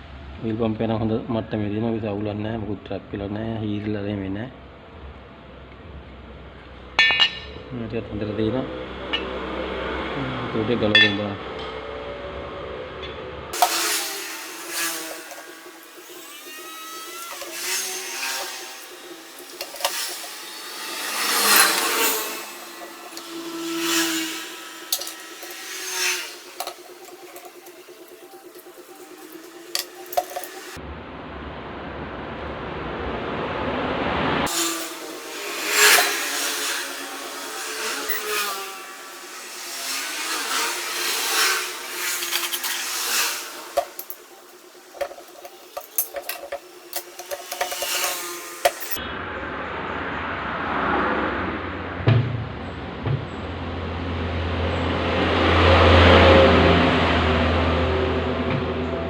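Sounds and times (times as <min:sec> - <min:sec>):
hissing: 0:13.6 - 0:30.8, 0:34.5 - 0:49.0
metal parts scraping: 0:13.6 - 0:30.8, 0:34.5 - 0:49.0.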